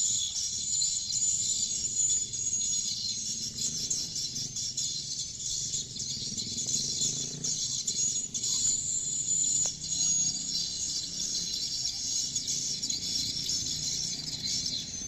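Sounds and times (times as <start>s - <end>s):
swiftlets twittering: 0.0s - 15.0s.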